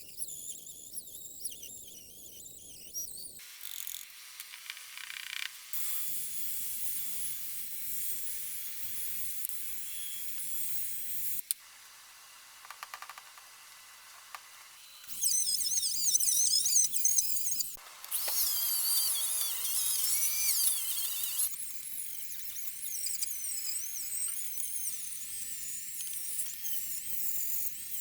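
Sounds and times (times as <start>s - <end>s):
power tool whining on metal: 4.7s - 11.6s, 14.7s - 28.0s.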